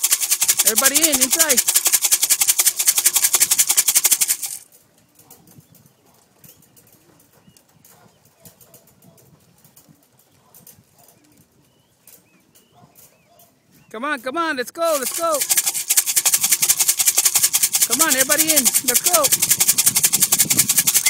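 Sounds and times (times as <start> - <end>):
can of feed rattling: 0.0 - 4.8, 14.8 - 21.0
wings fluttering: 0.0 - 8.8, 14.9 - 21.0.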